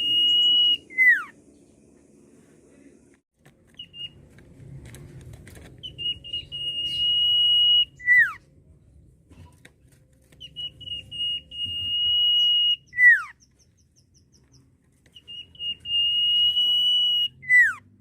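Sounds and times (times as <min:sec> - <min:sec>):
bird whistling: 0:00.0 - 0:01.4, 0:03.8 - 0:04.2, 0:05.8 - 0:08.4, 0:10.4 - 0:13.5, 0:15.1 - 0:17.9.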